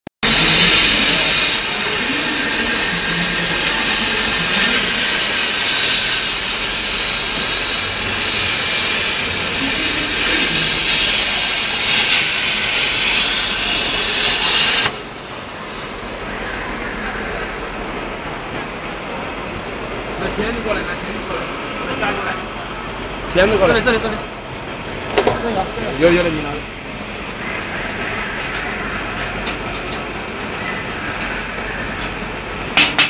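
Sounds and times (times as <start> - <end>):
plasma cutting torch hissing: 0.2 - 16.3.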